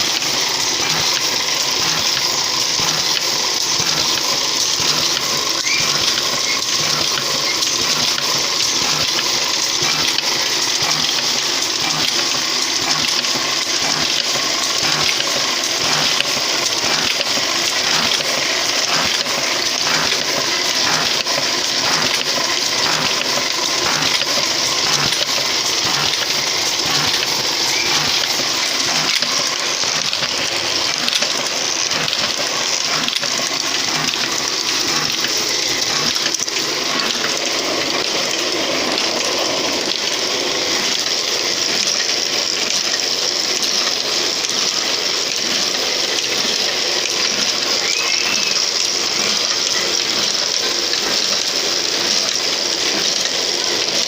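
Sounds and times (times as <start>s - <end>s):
machine hissing: 0.0s - 54.0s.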